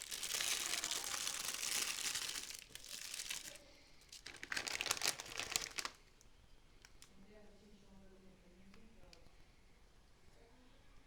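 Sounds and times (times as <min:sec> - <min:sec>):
packaging crinkling: 0:00.0 - 0:06.2.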